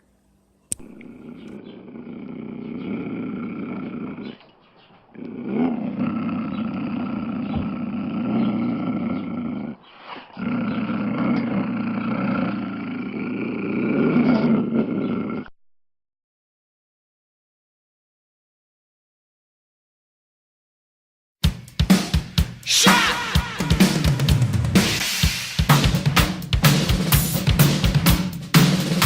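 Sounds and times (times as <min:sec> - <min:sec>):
big cat growling and roaring: 0:00.8 - 0:15.5.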